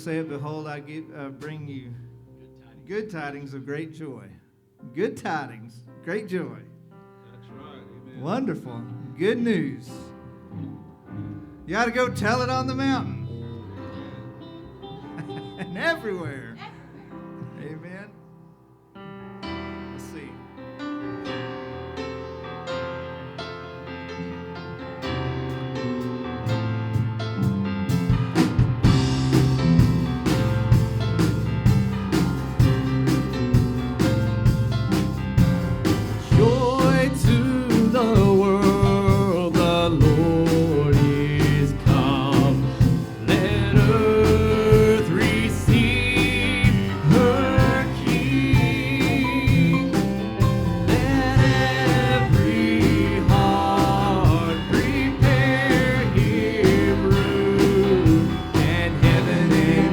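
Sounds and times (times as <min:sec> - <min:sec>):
country gospel band playing: 0:00.0 - 0:18.5, 0:19.1 - 0:59.9
sung vocals: 0:36.2 - 0:59.9.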